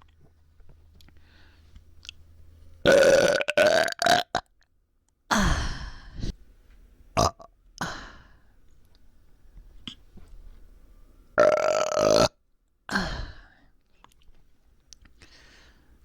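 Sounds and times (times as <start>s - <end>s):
person burping loudly: 2.8s - 4.5s, 7.2s - 8.0s, 11.4s - 13.4s.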